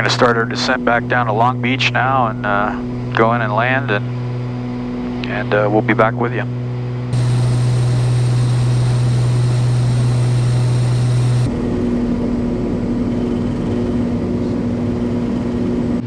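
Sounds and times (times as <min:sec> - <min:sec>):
aircraft cabin engine drone: 0:07.1 - 0:11.5.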